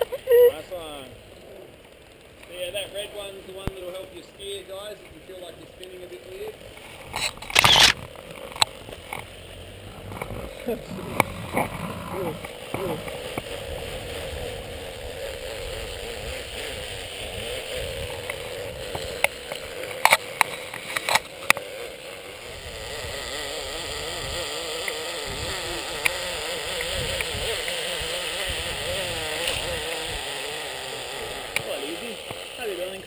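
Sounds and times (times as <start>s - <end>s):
zipline pulleys whirring on cable: 7.1s - 33.0s
sharp clicks: 7.3s - 8.0s.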